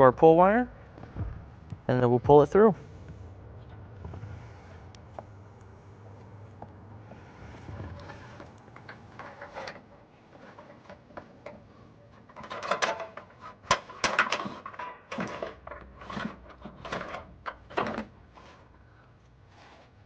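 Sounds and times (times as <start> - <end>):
wire scraping and rustling: 7.0 - 11.1.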